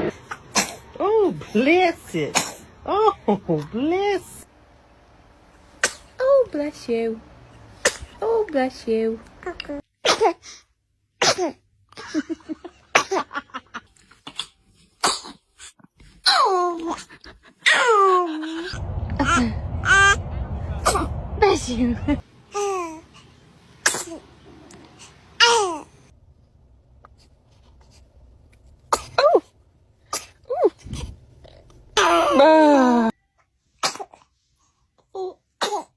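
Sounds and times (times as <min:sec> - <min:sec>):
baby sneezing: 0:00.0 - 0:00.9, 0:02.3 - 0:02.7, 0:05.8 - 0:06.1, 0:07.8 - 0:08.2, 0:10.0 - 0:10.6, 0:11.2 - 0:11.6, 0:14.2 - 0:15.4, 0:23.8 - 0:24.2, 0:25.4 - 0:25.9, 0:28.9 - 0:29.5, 0:30.1 - 0:31.1, 0:33.8 - 0:34.3, 0:35.6 - 0:35.9
small high sneezes: 0:07.8 - 0:08.2.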